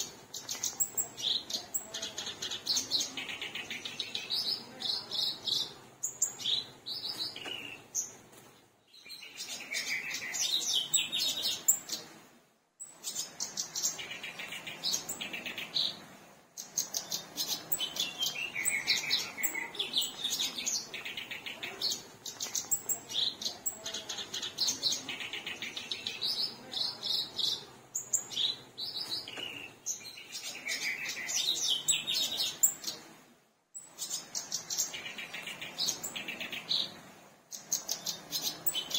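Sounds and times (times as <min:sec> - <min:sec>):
reed warbler singing: 0:00.0 - 0:08.2, 0:08.8 - 0:12.2, 0:12.8 - 0:33.1, 0:33.8 - 0:38.9.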